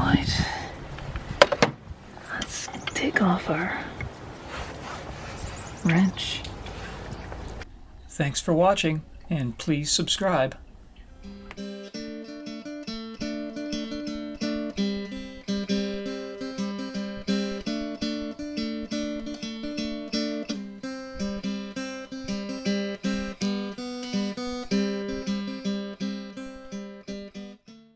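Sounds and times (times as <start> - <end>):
strummed acoustic guitar: 8.1 - 27.9.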